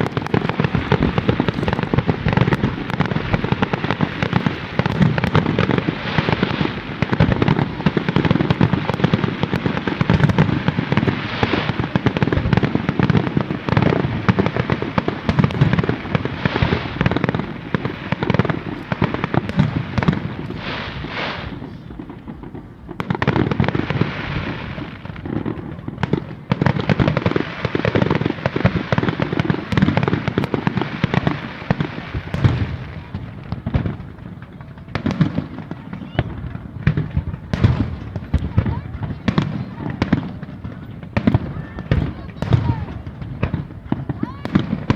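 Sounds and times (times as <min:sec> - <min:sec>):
fireworks bursts and booms: 0:00.0 - 0:44.9.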